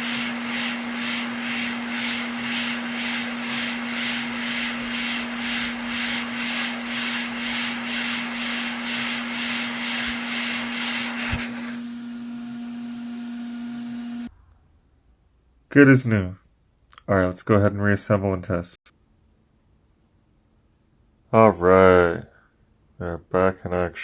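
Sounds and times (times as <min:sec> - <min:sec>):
pulsing hiss: 0:00.0 - 0:11.9
electric blower motor humming: 0:00.0 - 0:14.3.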